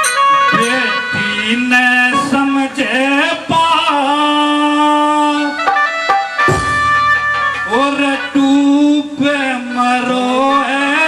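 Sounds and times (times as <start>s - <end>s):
instrumental accompaniment: 0.0s - 11.0s
person singing long wavering notes: 0.3s - 5.5s.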